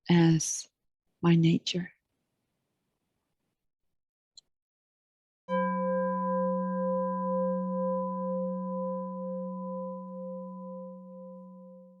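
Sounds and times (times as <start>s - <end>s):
meditation bell ringing: 5.5s - 12.0s.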